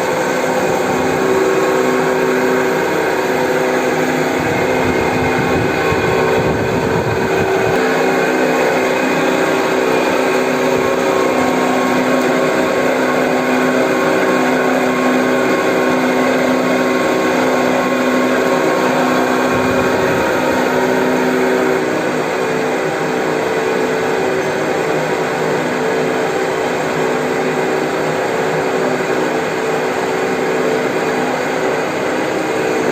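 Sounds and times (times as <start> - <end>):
bandsaw running: 0.0 - 22.8.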